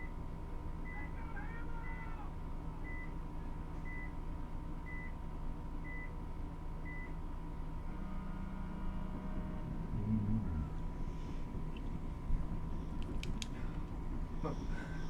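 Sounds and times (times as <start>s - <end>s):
electrical hum: 6.8s - 15.0s.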